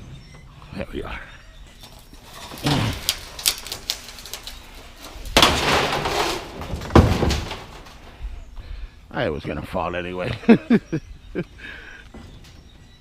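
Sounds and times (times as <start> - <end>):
scraping rattle: 1.8 - 8.1
scrap metal knocks and clanks: 5.0 - 8.1.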